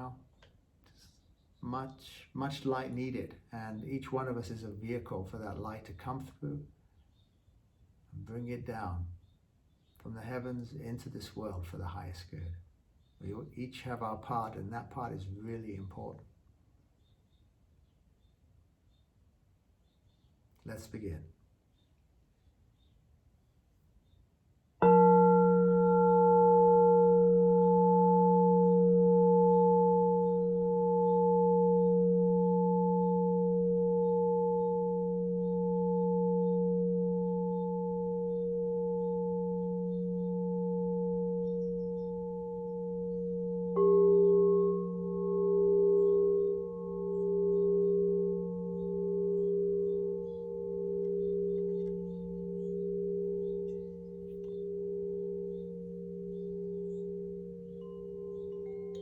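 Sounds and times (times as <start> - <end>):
singing bowl struck: 24.8 - 59.0
singing bowls ringing: 24.8 - 59.0.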